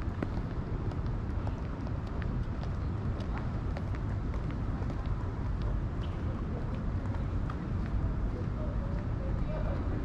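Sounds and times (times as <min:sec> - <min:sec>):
low urban rumble: 0:00.0 - 0:10.0.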